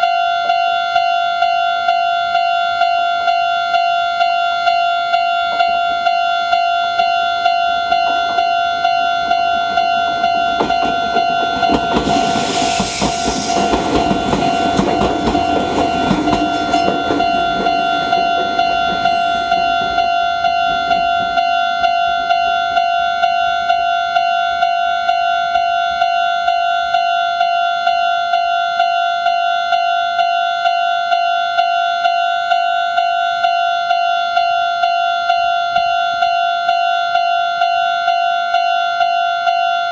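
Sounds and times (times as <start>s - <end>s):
level-crossing alarm ringing: 0.0s - 39.9s
train wheels clacking over rail joints: 7.9s - 21.5s.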